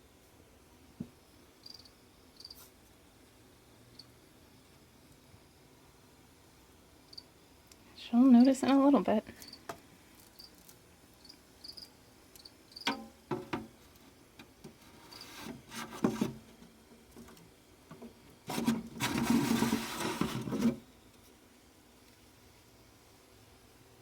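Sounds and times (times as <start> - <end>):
scraping and rustling: 14.6 - 20.9
rubbing noises: 14.8 - 16.5, 18.4 - 20.8.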